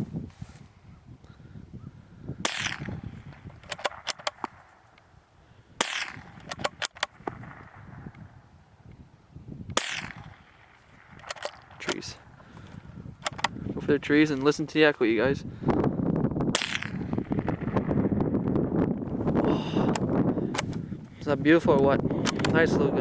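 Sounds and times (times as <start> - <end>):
rifle shots: 2.4 - 5.0, 5.8 - 8.5, 9.7 - 13.5, 16.5 - 18.5
metallic clicks of rifle bolt: 2.5 - 5.1, 5.8 - 8.2, 11.0 - 13.6, 19.9 - 20.8, 22.2 - 22.6.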